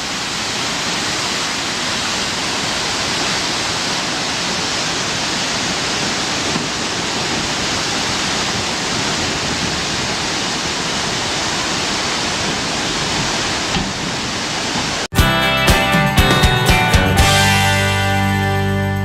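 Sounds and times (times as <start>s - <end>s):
rushing floodwater: 0.0s - 15.1s.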